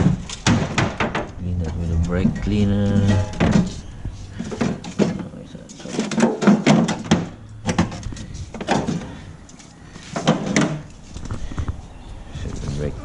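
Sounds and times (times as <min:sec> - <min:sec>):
metal knocks and clatter: 0:00.0 - 0:09.2, 0:10.1 - 0:10.9.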